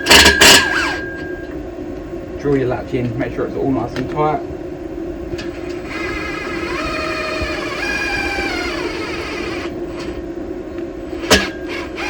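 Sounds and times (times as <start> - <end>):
cordless drill motor whine: 0.0 - 1.6, 5.5 - 10.2, 11.1 - 12.0.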